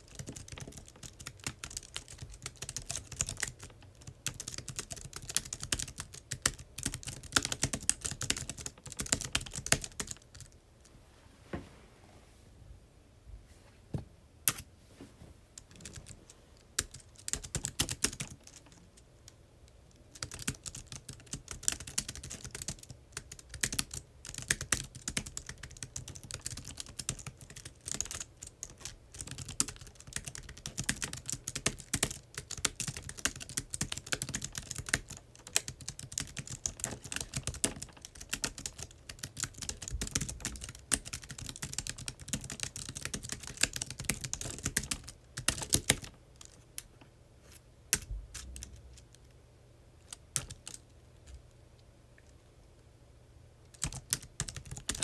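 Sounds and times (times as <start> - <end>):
typing on computer keyboard: 0.0 - 10.5, 15.6 - 16.2, 16.8 - 19.1, 19.9 - 46.9, 47.9 - 49.1, 50.1 - 50.8, 53.7 - 55.0.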